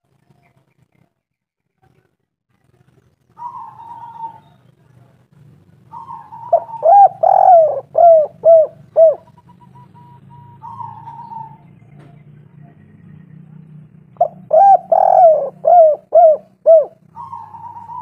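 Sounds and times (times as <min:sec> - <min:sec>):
dove cooing: 0:03.4 - 0:04.6, 0:05.8 - 0:12.2, 0:14.1 - 0:18.0.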